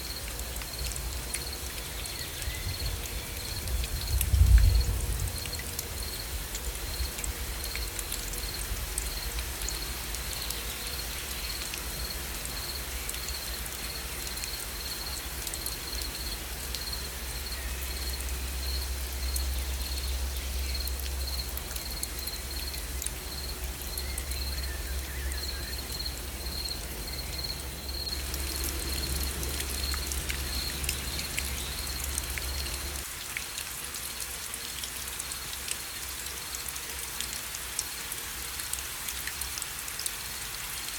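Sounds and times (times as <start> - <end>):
rain pattering: 0.0 - 40.9
insect chirping: 11.5 - 33.0.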